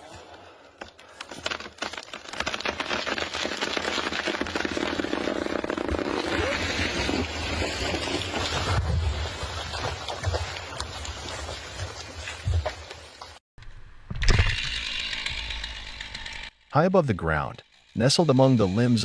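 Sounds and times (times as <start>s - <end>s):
chainsaw engine running: 14.6s - 19.0s.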